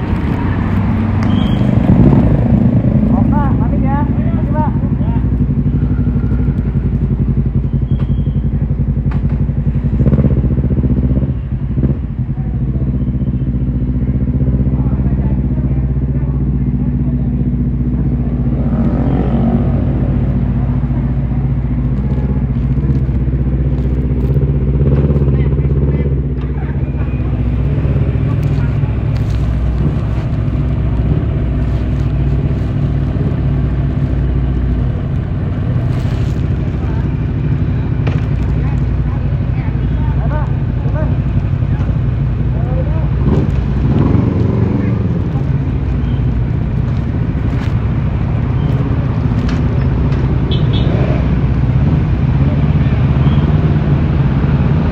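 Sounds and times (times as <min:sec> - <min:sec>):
motorcycle engine running: 0:00.0 - 0:54.9.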